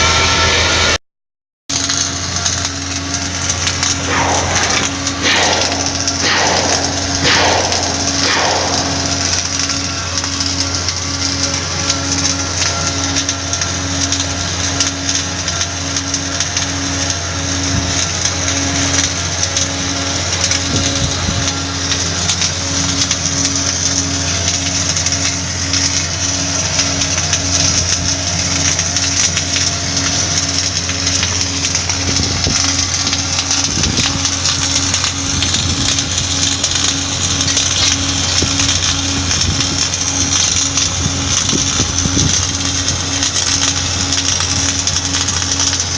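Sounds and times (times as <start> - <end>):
welding arc crackling and hissing: 1.7 - 45.9
low hum: 2.7 - 14.2
pulsing low tone: 3.8 - 10.7.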